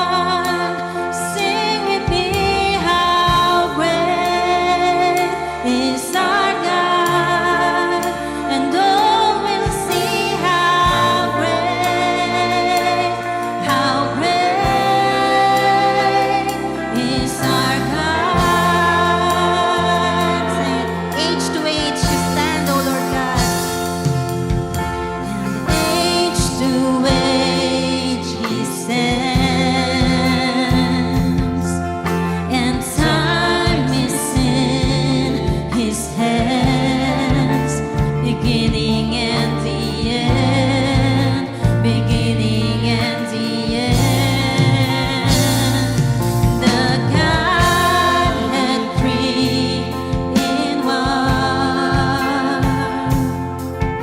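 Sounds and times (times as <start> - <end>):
bass line: 0.0 - 54.0
people singing: 0.0 - 54.0
worship band playing: 0.0 - 54.0.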